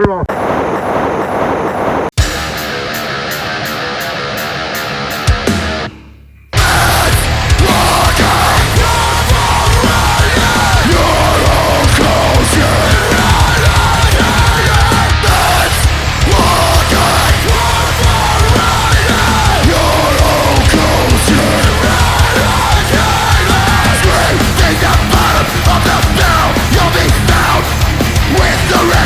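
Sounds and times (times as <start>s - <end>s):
heavy metal band music: 2.2s - 29.0s.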